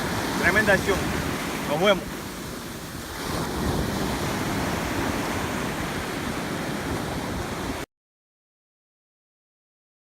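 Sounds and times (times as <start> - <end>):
wind buffeting microphone: 0.0 - 7.8
ocean surf washing on beach: 0.0 - 7.9.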